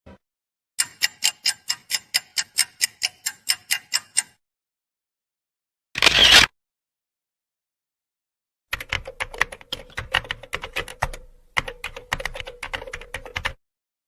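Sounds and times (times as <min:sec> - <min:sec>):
keyboard typing: 0:08.7 - 0:13.6.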